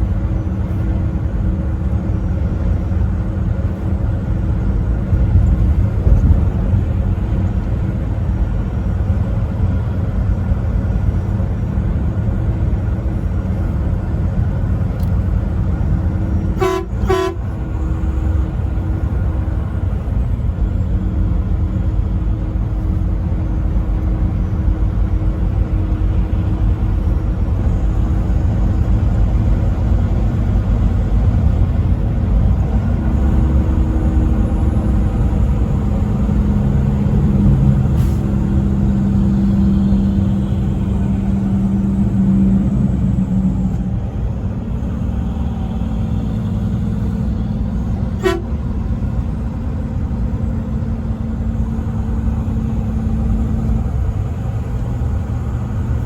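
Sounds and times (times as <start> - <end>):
truck engine and road rumble: 0.0 - 56.0
truck horn long tones: 16.3 - 18.8, 44.8 - 50.5.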